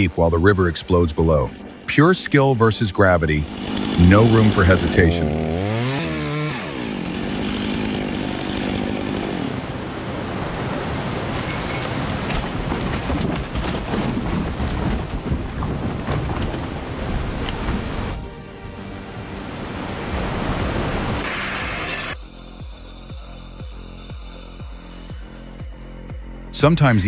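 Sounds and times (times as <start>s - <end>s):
chainsaw cutting log: 3.4s - 9.8s, 20.9s - 25.8s
waterfall and river rushing: 9.5s - 12.8s, 16.6s - 22.2s.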